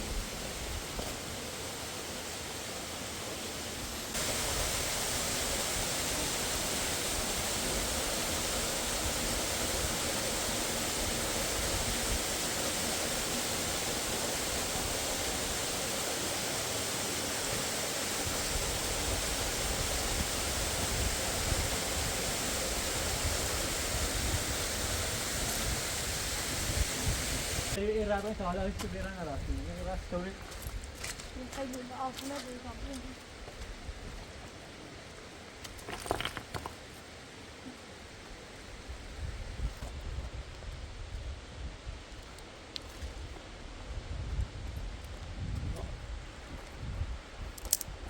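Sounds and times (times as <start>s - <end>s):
rushing river water: 0.0s - 27.8s.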